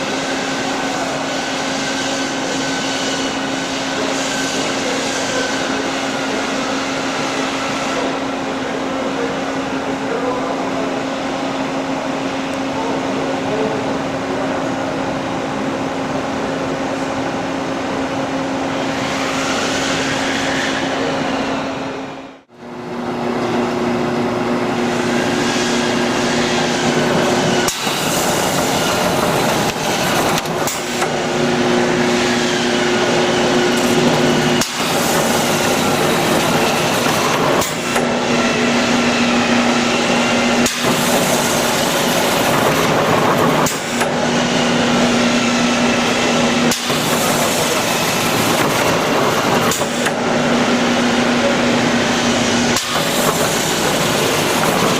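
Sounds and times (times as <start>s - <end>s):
cutting machine humming: 18.6s - 54.9s.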